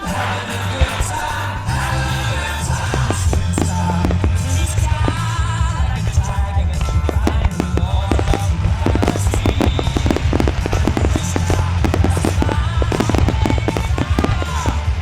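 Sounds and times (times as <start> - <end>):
music playing: 0.0 - 15.0
continuous low rumble: 0.7 - 15.0
firework shell bursts: 2.7 - 5.4, 6.8 - 15.0.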